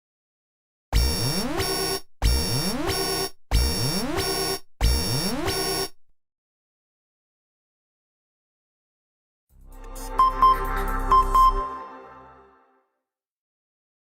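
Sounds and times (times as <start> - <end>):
electronic alert chime: 10.0 - 12.4.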